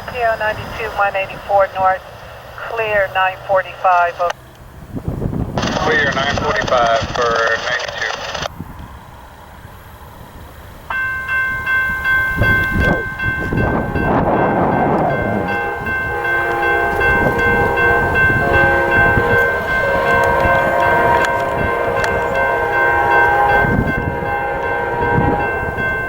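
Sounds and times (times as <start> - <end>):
passing train rumble: 0.0 - 26.0
lower horn tones: 11.6 - 26.0
train air horn chord: 13.7 - 26.0.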